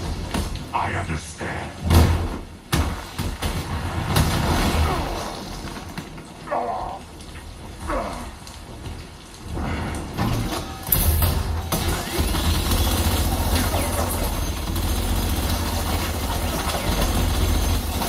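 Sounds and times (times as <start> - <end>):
rain-like hiss: 3.7 - 11.1.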